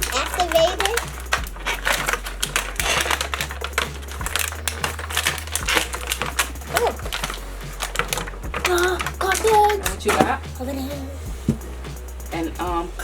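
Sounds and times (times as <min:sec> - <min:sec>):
plastic pieces clicking and rattling: 0:00.0 - 0:10.3.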